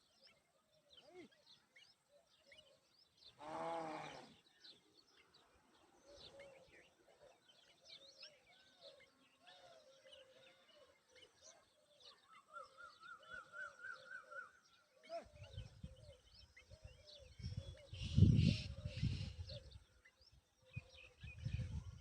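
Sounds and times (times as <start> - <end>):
birds chirping: 0.0 - 22.0.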